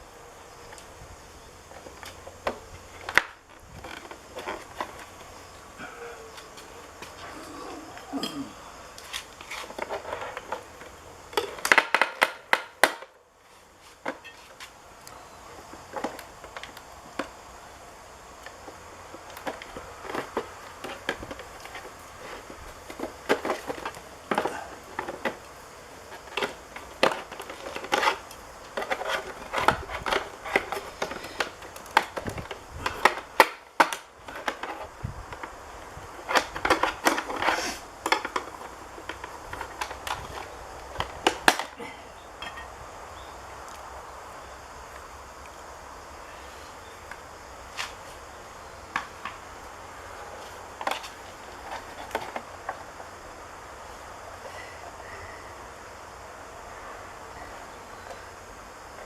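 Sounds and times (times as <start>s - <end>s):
hand tools and plastic clicking: 18.4s - 41.8s, 50.4s - 52.9s.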